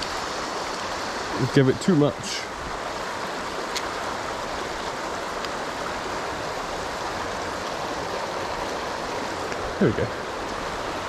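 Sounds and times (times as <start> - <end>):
river water rushing over stones: 0.0 - 11.0.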